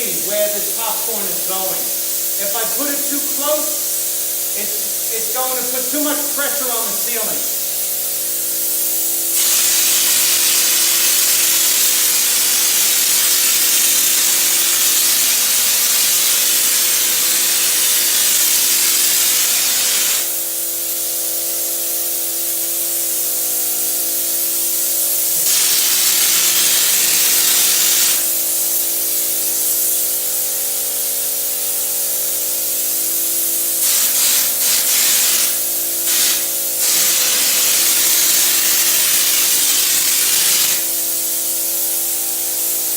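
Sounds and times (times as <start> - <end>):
hopper gun spraying air: 0.0 - 21.4, 24.1 - 29.6, 33.6 - 41.5.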